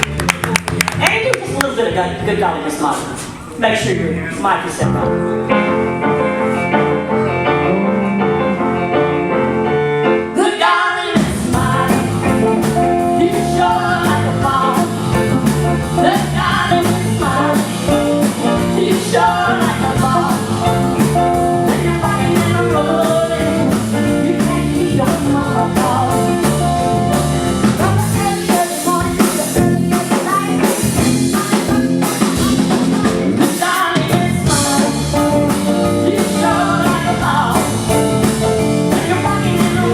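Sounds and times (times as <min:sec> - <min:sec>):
held keyboard notes: 0:00.0 - 0:10.5, 0:11.2 - 0:39.9
live rock band playing: 0:00.0 - 0:39.9
person singing: 0:10.3 - 0:27.1, 0:27.7 - 0:39.9.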